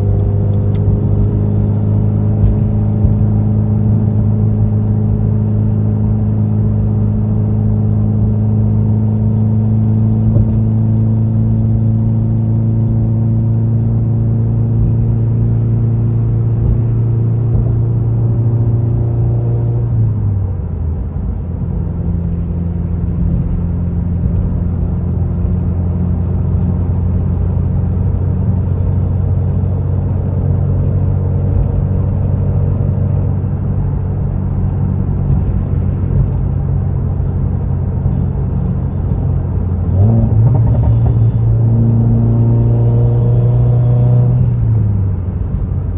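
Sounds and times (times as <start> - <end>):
car engine droning: 0.0 - 45.9.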